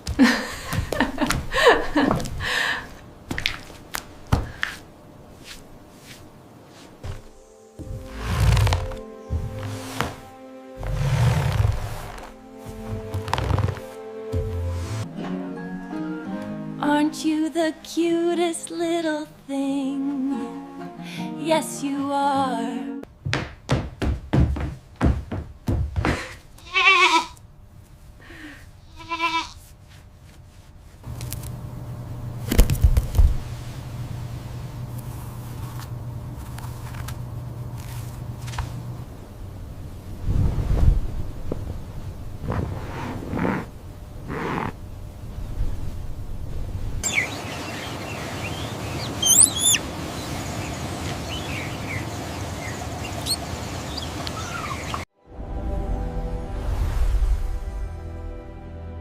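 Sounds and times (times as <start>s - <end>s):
steady background hiss: 0.0s - 14.3s
lamb bleating: 26.6s - 27.4s, 28.9s - 29.6s
steady low hum: 30.7s - 54.5s
small birds chirping: 47.0s - 55.0s.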